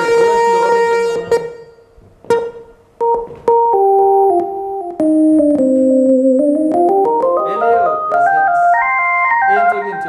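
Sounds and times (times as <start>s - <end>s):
synthesizer keyboard chords: 2.3s - 10.0s.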